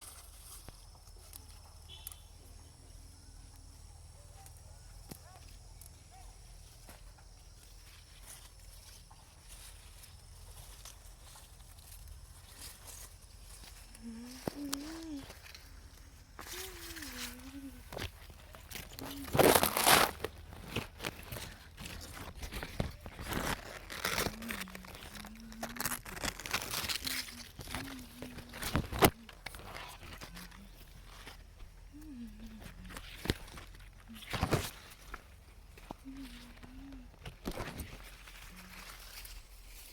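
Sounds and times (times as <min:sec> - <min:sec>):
rustling and crunching leaves: 0:00.0 - 0:39.9.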